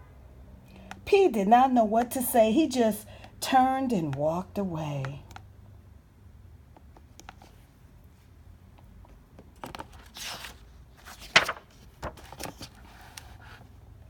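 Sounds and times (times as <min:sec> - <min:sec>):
paper rustling: 0:09.6 - 0:13.6.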